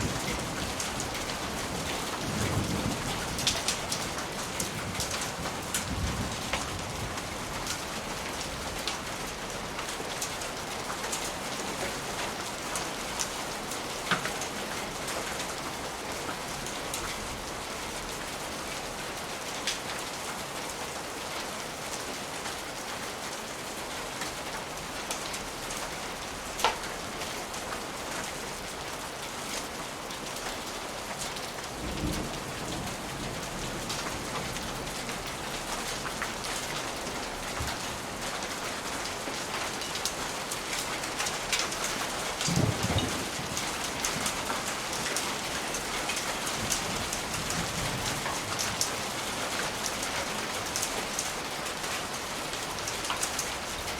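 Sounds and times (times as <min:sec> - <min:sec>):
steady rain: 0:00.0 - 0:53.9
distant thunder rumble: 0:42.4 - 0:44.9.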